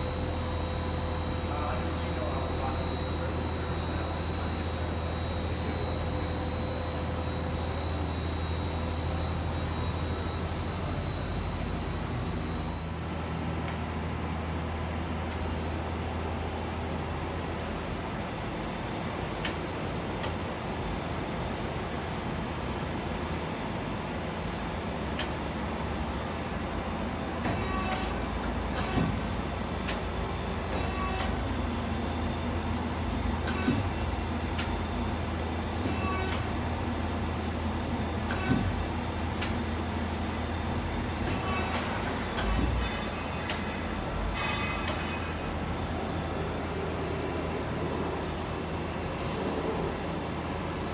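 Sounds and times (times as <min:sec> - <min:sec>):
shop machinery humming: 0:00.0 - 0:50.9
faint high beep: 0:42.8 - 0:46.3, 0:49.2 - 0:49.8.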